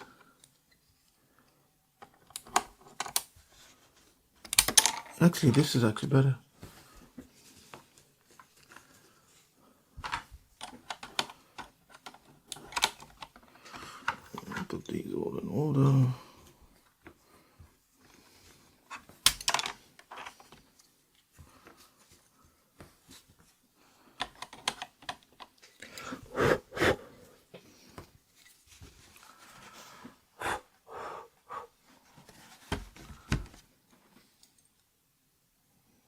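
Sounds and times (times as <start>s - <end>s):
keycaps clicking and clattering: 10.0s - 14.7s, 24.2s - 25.7s.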